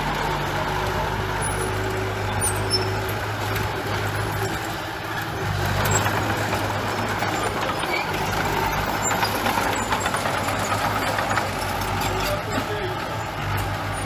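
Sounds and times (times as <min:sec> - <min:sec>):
diesel engine drone: 0:00.0 - 0:14.0.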